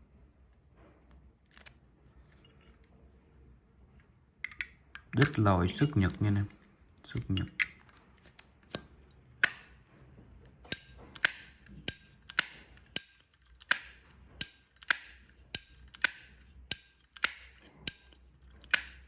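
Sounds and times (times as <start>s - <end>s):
lighter lid clicking open and shut: 14.8s - 18.1s, 18.7s - 19.0s.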